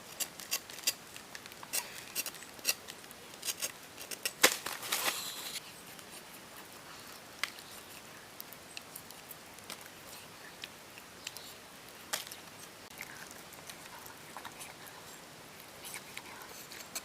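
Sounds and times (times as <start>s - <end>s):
faint clicks and crackles: 0.0s - 17.0s
soft hiss: 0.0s - 17.0s.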